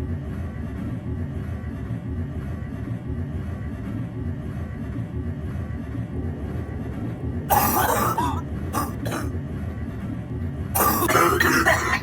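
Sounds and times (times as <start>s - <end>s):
person coughing: 7.5s - 9.3s, 10.8s - 12.0s.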